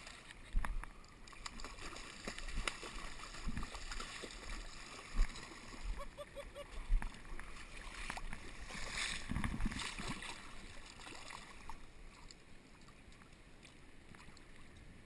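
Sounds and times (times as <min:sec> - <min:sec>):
splashing and knocks: 0:01.3 - 0:05.8, 0:07.0 - 0:11.4.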